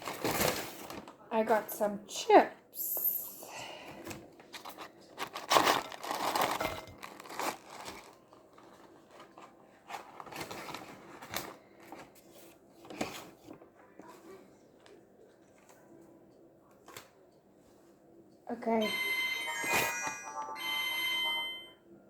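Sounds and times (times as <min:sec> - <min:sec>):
paper packaging crinkling: 0:00.0 - 0:01.2, 0:04.4 - 0:12.2.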